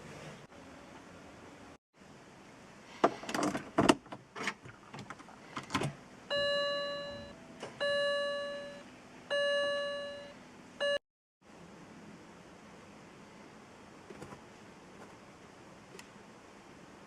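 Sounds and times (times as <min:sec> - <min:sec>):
electronic chime: 0:06.3 - 0:11.0.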